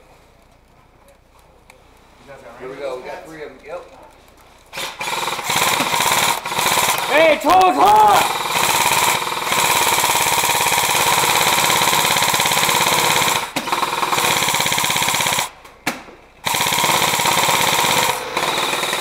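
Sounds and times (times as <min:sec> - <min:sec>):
airsoft gun firing bursts: 0:04.7 - 0:15.6, 0:16.4 - 0:19.0.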